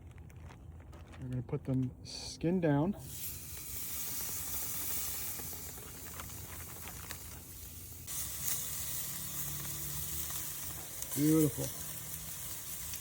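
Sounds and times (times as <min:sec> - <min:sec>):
meat sizzling on a grill: 0:03.0 - 0:13.0.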